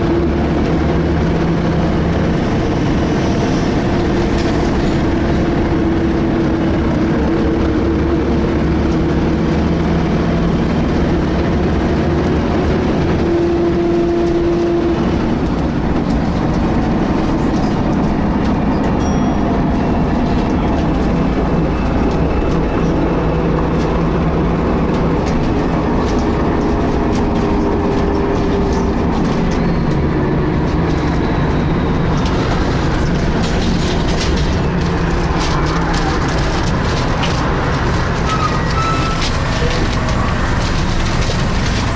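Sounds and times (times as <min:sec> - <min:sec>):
bus engine rumble: 0:00.0 - 0:41.9.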